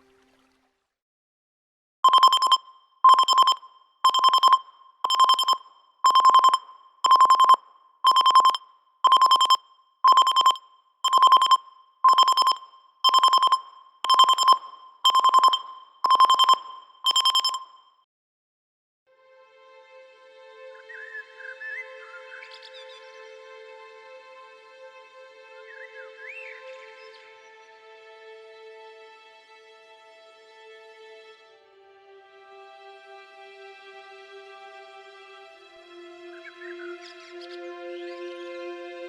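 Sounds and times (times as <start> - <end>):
electronic alarm beeps: 2.0 - 17.9.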